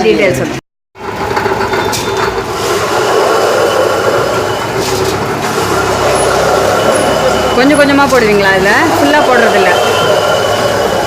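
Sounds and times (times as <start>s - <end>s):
wet grinding machine running: 1.0s - 11.0s.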